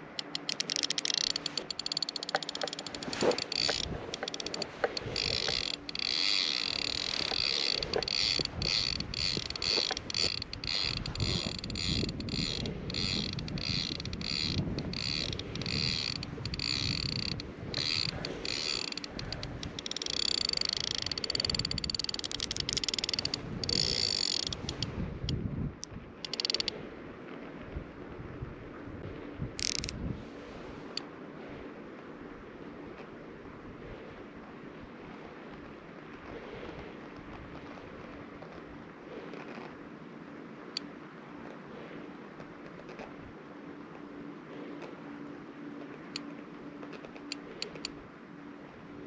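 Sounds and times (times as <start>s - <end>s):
fishing reel ratcheting click: 0.2s - 25.4s, 26.2s - 26.7s, 29.6s - 30.0s.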